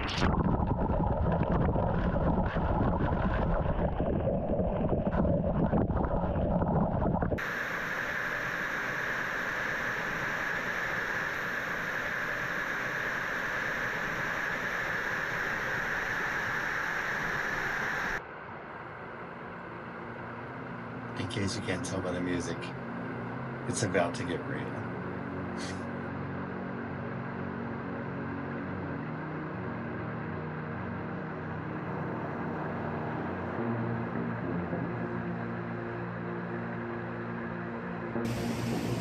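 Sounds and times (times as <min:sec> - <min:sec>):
water rushing over microphone: 0:00.0 - 0:18.2, 0:38.3 - 0:39.0.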